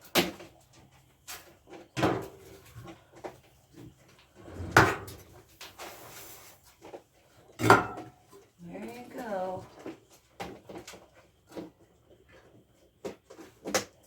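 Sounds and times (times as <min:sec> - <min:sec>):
feed container knocking: 0:04.4 - 0:05.4.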